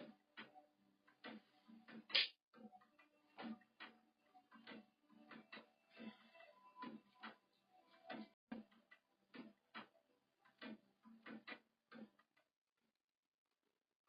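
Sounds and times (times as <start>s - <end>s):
sharp loud click: 2.1s - 2.3s.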